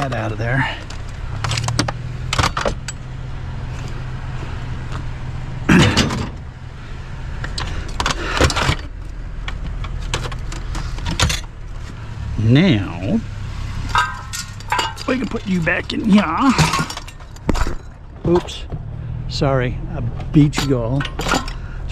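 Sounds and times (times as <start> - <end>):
knocks and rattles on scrap: 0.0 - 4.1, 5.7 - 6.5, 7.4 - 12.0, 13.6 - 19.2, 20.0 - 21.9
vehicle engine idling: 0.0 - 21.9.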